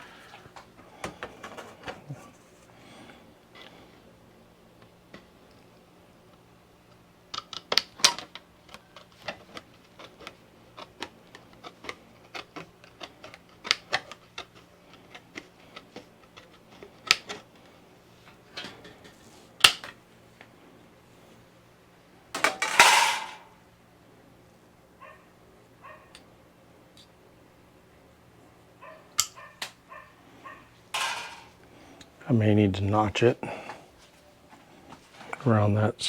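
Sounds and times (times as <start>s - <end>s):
metal clatter: 22.4s - 23.5s, 31.0s - 31.6s.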